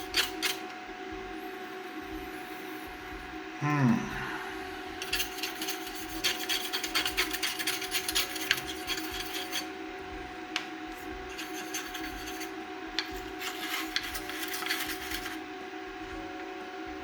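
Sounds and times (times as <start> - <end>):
scrubbing a surface: 5.0 - 9.7, 11.0 - 15.4.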